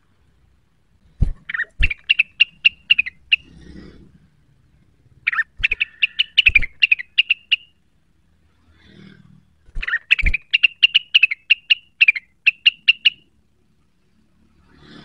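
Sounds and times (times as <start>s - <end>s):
bird chirping rapidly: 1.2s - 3.7s, 5.1s - 7.8s, 9.8s - 13.3s.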